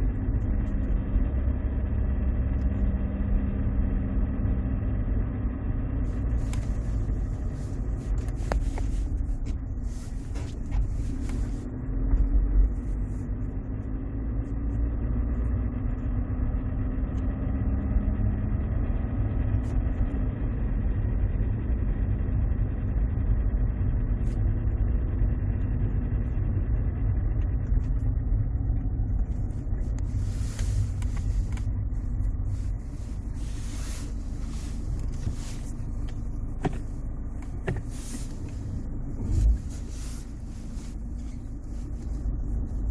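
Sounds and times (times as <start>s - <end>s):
diesel engine revving: 0.0s - 42.9s.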